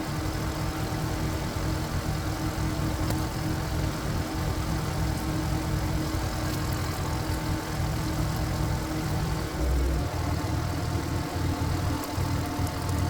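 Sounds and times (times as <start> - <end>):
diesel engine running: 6.2 - 13.0.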